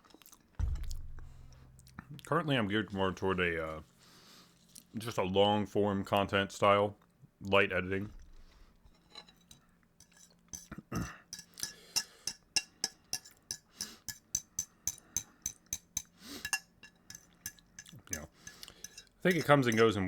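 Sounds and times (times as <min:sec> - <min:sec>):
cutlery clinking against a dish: 0:08.9 - 0:20.0.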